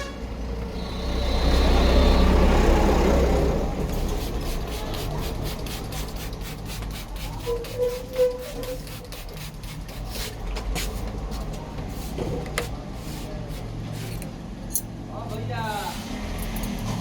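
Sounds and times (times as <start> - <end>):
heavy vehicle rumbling past: 0.0 - 5.5
thin high whine: 0.7 - 3.6.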